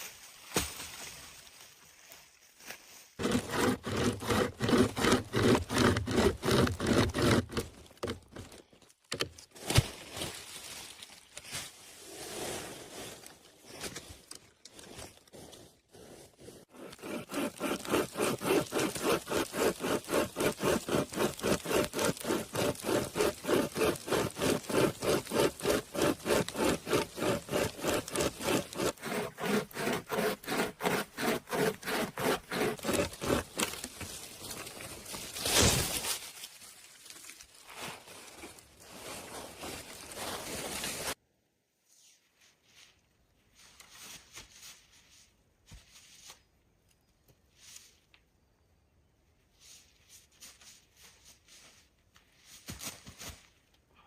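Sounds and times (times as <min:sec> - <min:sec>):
hand saw cutting wood: 0:03.2 - 0:08.5, 0:16.6 - 0:34.0.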